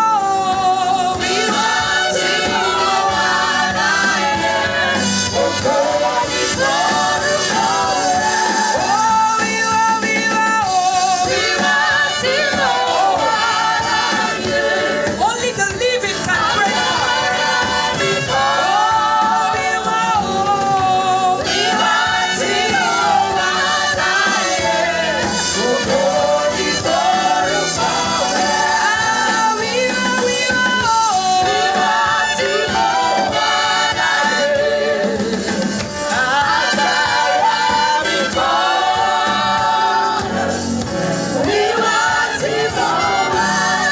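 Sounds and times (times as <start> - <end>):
congregation singing: 0.0 - 43.9
instrumental accompaniment: 0.0 - 43.9.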